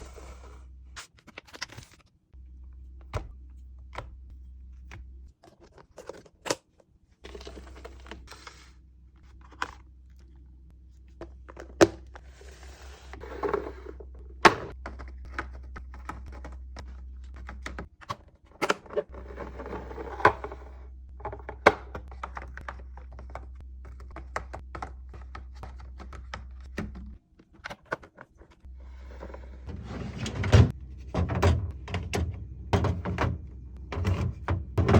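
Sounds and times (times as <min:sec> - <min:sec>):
refrigerator hum: 0:00.0 - 0:34.9
containers knocking on shelves: 0:30.2 - 0:34.9.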